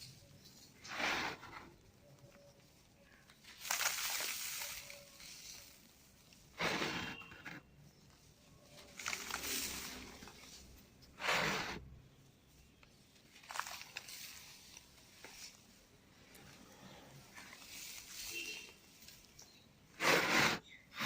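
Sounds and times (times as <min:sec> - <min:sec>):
dry cement crushing and crumbling: 0:03.1 - 0:05.2, 0:08.6 - 0:11.9, 0:13.2 - 0:14.4.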